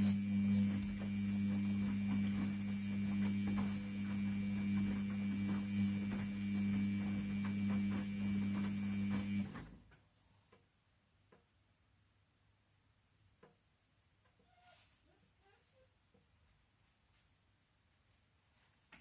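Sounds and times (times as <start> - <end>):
washing machine motor hum: 0.0 - 9.8.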